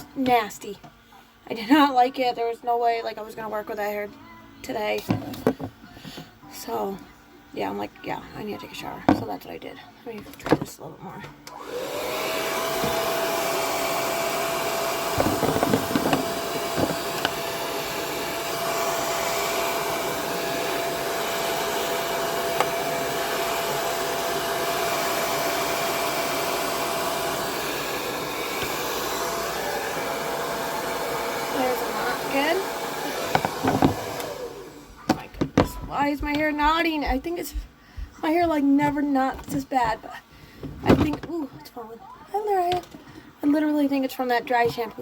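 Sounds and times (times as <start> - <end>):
blow dryer running: 11.4 - 38.8.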